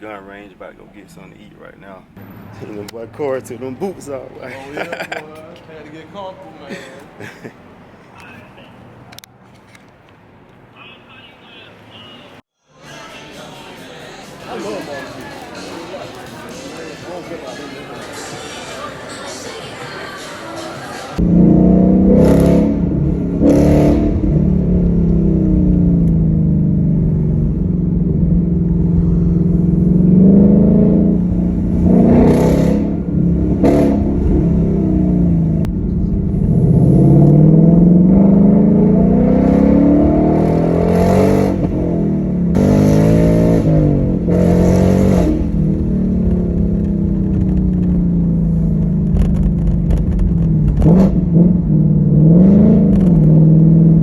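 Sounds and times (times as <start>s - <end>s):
low exhaust rumble: 21.2s - 40.8s, 41.5s - 54.0s
car engine accelerating: 21.2s - 54.0s.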